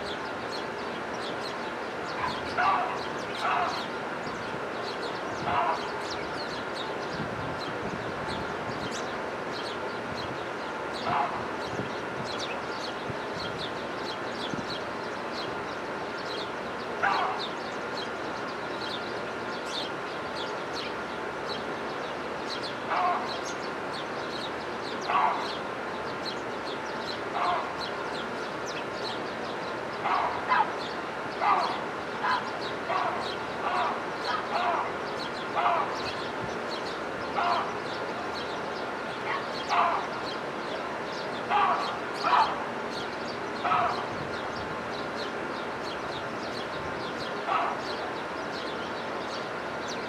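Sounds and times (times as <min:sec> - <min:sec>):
small birds chirping: 0:00.0 - 0:50.0
lower-pitched bird call: 0:30.0 - 0:50.0.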